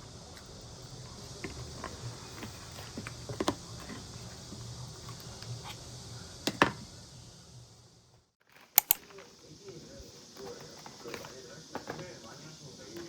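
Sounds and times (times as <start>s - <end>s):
sharp double click: 8.8s - 9.0s.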